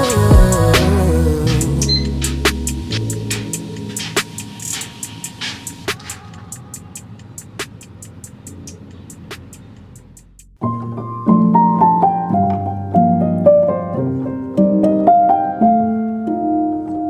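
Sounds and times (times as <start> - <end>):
solo piano piece: 10.6 - 17.0.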